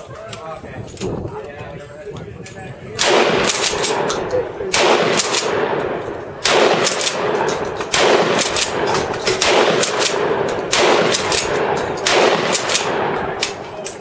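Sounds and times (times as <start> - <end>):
overlapping gunshots: 2.9 - 14.0
heavy gun blasts with echo: 3.0 - 13.8.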